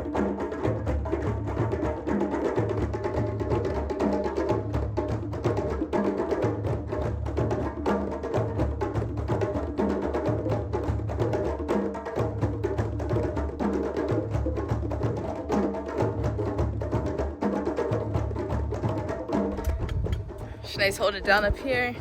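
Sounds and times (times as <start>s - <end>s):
knocking percussion: 0.0s - 22.0s.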